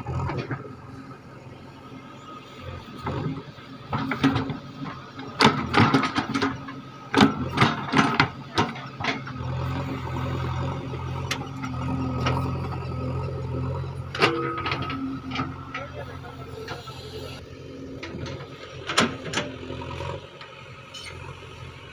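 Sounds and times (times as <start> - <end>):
diesel engine running under load: 0.0 - 21.9
metallic knocks and clanks: 3.9 - 9.5, 13.7 - 17.4.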